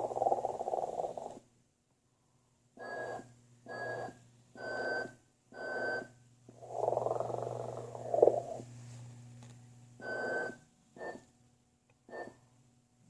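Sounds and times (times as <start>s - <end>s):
low steady hum: 0.0s - 13.0s
recorded whistling snores: 0.1s - 1.4s, 2.8s - 8.6s, 10.0s - 11.2s, 12.1s - 12.4s.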